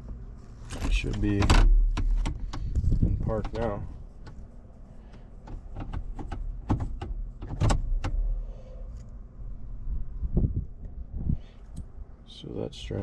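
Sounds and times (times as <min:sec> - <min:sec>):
steady low rumble: 0:00.0 - 0:13.0
sharp clicks and knocks: 0:00.6 - 0:04.4, 0:05.1 - 0:08.3.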